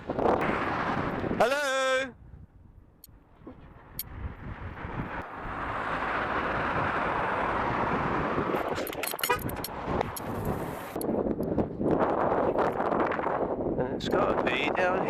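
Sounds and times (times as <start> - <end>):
car passing by: 0.3 - 1.4, 4.1 - 8.9.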